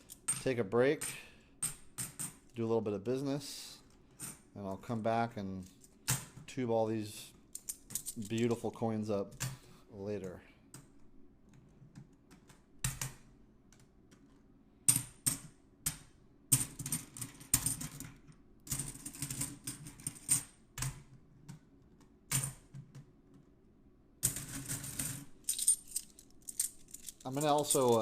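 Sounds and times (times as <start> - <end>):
coins clicking and clinking: 7.6 - 8.6, 24.2 - 28.0.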